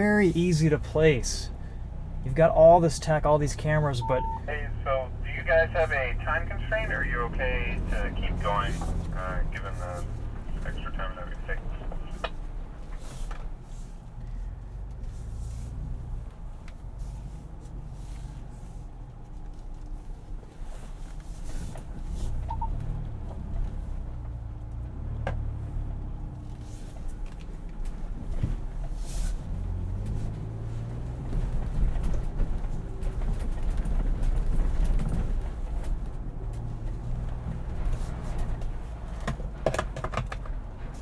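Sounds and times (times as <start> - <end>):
engine and drivetrain hum: 0.0 - 41.0.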